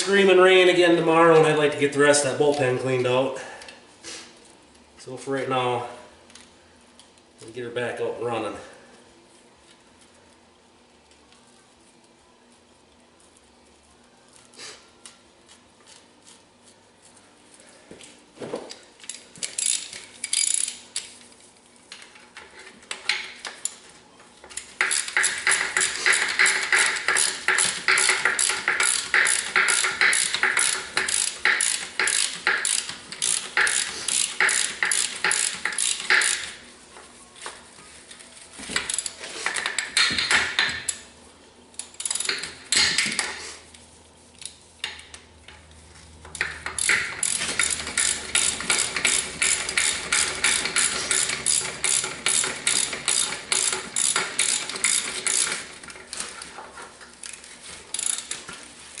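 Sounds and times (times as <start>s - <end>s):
hand ratchet clicking: 19.0s - 21.1s, 24.5s - 36.6s, 38.8s - 41.0s, 41.8s - 43.4s, 46.2s - 56.5s, 57.2s - 58.6s.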